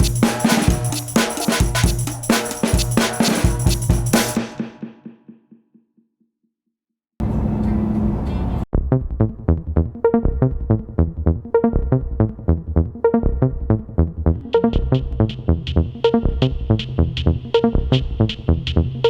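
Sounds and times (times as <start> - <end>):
electronic dance music: 0.0 - 4.8.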